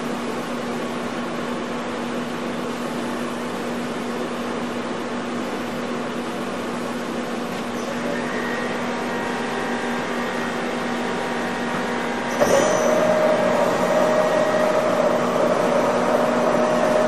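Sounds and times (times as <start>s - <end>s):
milling machine humming: 0.0s - 17.0s
faint high whine: 7.6s - 17.0s.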